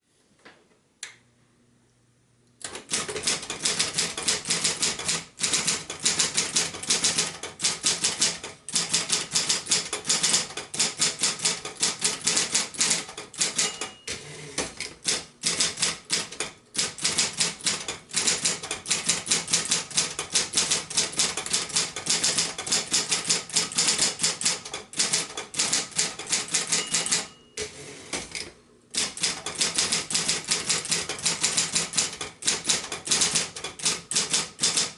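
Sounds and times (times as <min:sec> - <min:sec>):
manual typewriter typing: 0:02.6 - 0:27.4, 0:29.0 - 0:34.9
typewriter margin bell ringing: 0:10.1 - 0:10.5, 0:12.8 - 0:14.2, 0:25.6 - 0:27.6.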